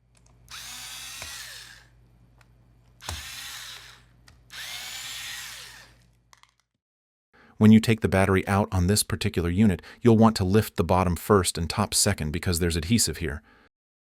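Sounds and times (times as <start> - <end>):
electric screwdriver whirring: 0.5 - 1.9, 3.0 - 6.1.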